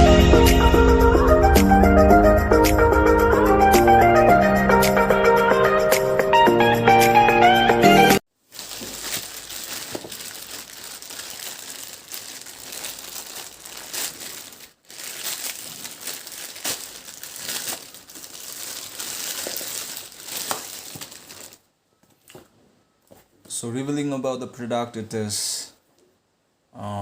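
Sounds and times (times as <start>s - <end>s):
packaging crinkling and tearing: 8.4s - 21.6s.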